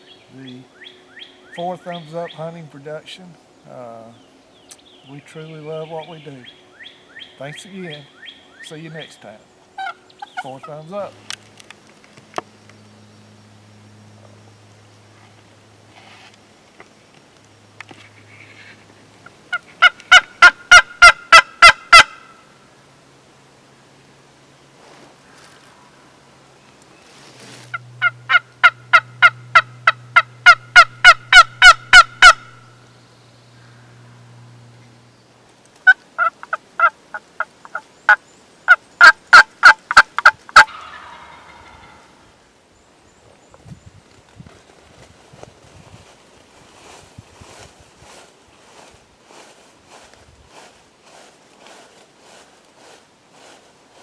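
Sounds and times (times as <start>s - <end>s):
wild turkey yelping: 9.8s - 10.9s, 19.5s - 22.5s, 27.7s - 32.8s, 35.8s - 42.3s.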